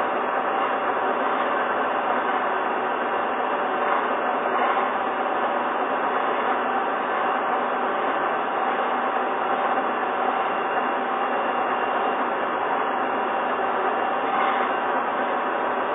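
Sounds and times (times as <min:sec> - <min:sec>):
gear-cutting machine running: 0:00.0 - 0:15.9.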